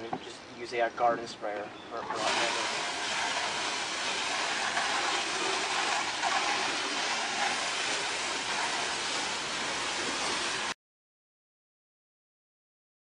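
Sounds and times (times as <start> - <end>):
water spraying onto wooden boards: 2.1 - 10.8.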